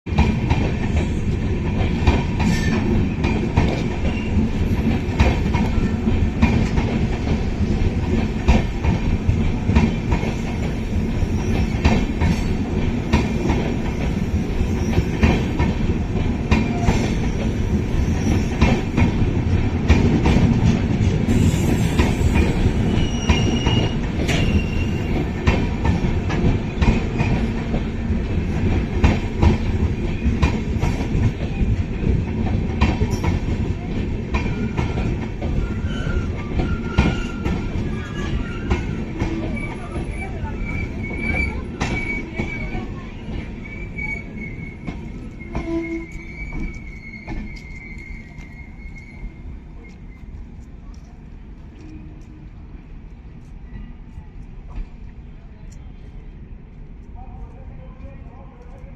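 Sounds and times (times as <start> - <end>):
train wheels rumbling on rails: 0.1 - 58.9
high-pitched wheel squeals: 22.8 - 25.2, 35.5 - 42.8, 43.5 - 50.3.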